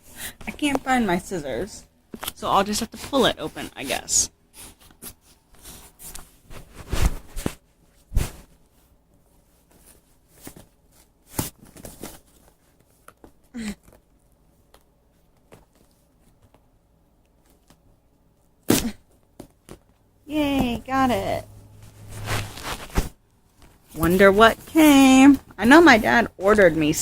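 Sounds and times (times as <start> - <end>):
packaging rustling: 21.7 - 24.0.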